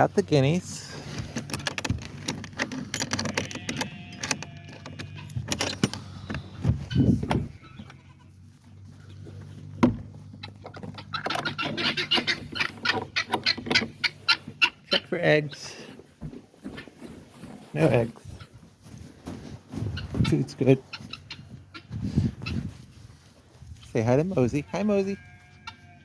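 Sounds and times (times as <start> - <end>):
farm animals calling: 0.0 - 26.0
clatter and knocks: 1.2 - 7.4.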